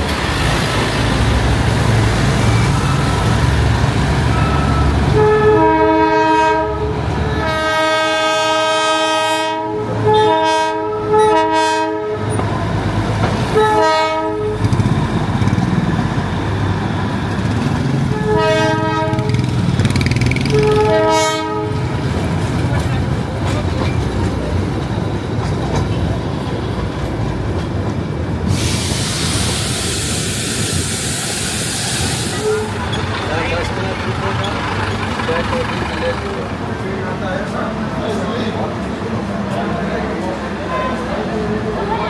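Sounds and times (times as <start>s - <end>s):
train rumbling: 0.0s - 42.0s
train horn blasts: 5.1s - 12.4s, 13.4s - 14.8s, 18.1s - 19.6s, 20.4s - 22.0s, 32.3s - 32.8s.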